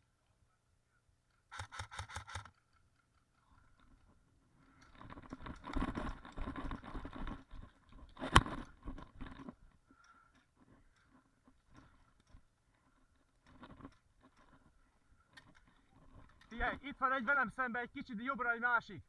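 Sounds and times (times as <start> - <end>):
gear rustling and scraping: 2.6 - 9.8, 10.4 - 17.1.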